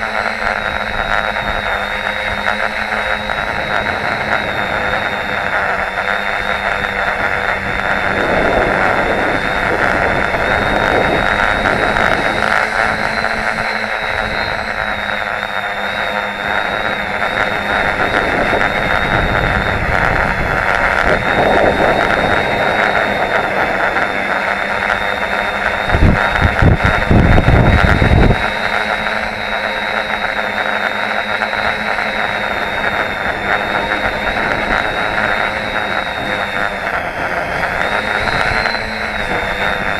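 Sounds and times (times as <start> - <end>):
drone motors and propellers whining: 0.0 - 39.9.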